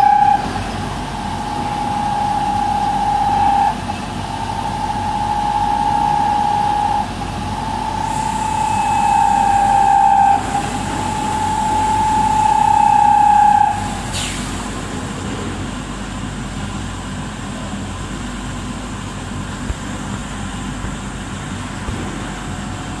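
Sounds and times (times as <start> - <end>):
falling whistle: 0.0 - 0.6, 1.2 - 14.0
machine high whine: 0.0 - 15.2
steady machine noise: 0.0 - 23.0.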